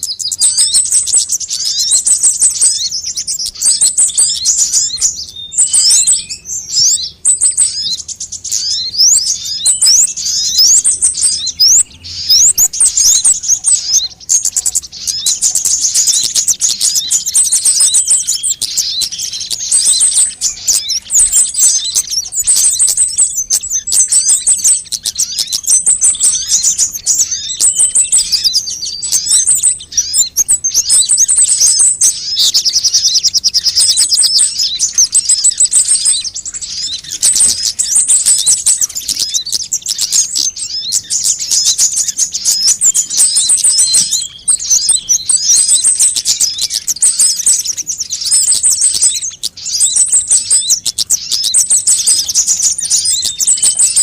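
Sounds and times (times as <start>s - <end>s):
sunbird twittering calls: 0.0s - 54.0s.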